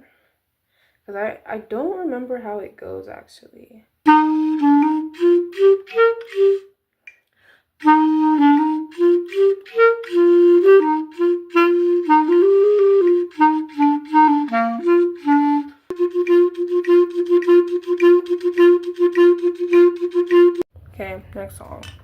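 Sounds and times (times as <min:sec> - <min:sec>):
woodwind instrument playing: 0:04.1 - 0:06.8, 0:07.8 - 0:20.7.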